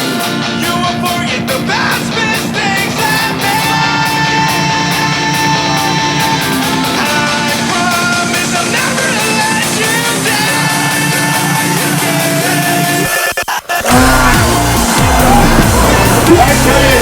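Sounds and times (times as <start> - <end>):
rock guitar: 0.0 - 13.2, 13.8 - 17.0
person singing and shouting: 13.7 - 17.0.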